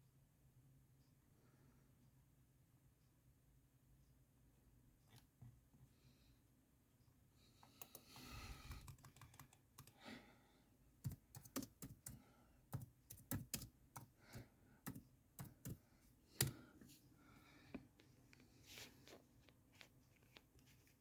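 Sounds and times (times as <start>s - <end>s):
typing on computer keyboard: 7.6s - 10.0s, 11.0s - 15.8s.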